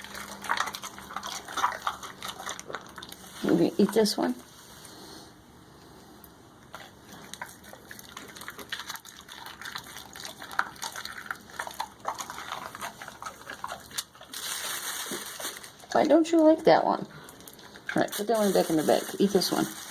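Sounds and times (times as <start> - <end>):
dog chewing raw meat: 0.0 - 4.3, 6.6 - 14.5.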